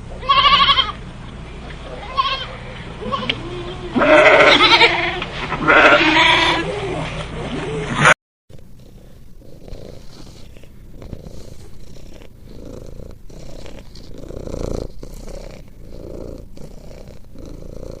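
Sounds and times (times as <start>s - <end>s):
animal purring: 8.5s - 18.0s.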